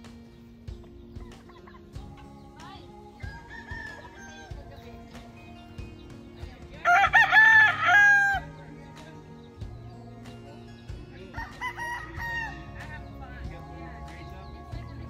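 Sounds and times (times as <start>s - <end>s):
faint rooster crowing: 3.2s - 4.7s
rooster crowing: 3.2s - 4.8s, 6.8s - 8.6s, 11.4s - 12.8s.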